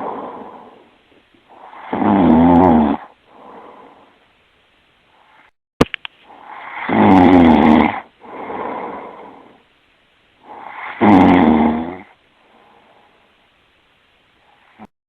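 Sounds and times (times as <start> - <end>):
quiet breath: 0.0 - 2.0, 3.0 - 5.6, 6.2 - 6.9, 8.0 - 11.0, 12.0 - 14.9
man snoring: 1.5 - 3.9, 6.4 - 9.6, 10.4 - 12.2
sharp click: 5.8 - 6.2.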